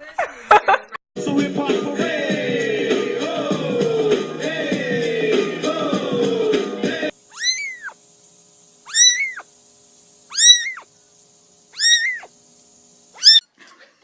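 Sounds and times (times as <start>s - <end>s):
cat meowing: 7.3s - 8.0s, 8.9s - 9.4s, 10.3s - 10.9s, 11.8s - 12.3s, 13.2s - 13.4s.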